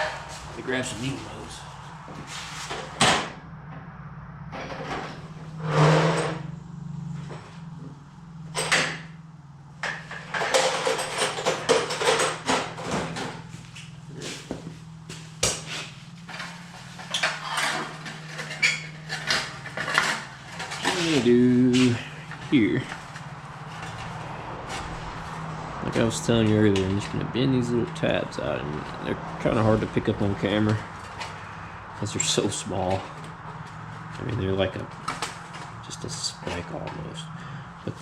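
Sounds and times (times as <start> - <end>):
steady low hum: 0.0 - 38.0
hand tools clanking on sheet metal: 9.8 - 13.5, 16.3 - 23.0.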